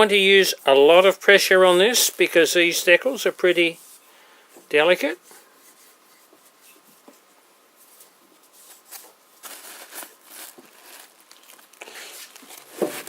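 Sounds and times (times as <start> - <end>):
hand rubbing a surface: 2.8 - 11.1.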